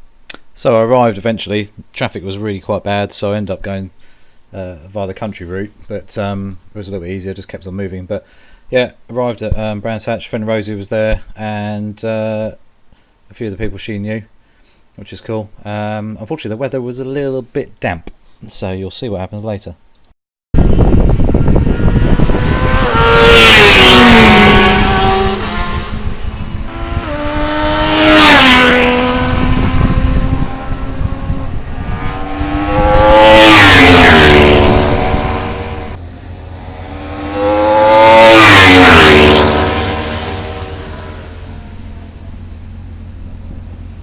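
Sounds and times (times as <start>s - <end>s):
motorcycles passing at speed: 21.0s - 42.2s.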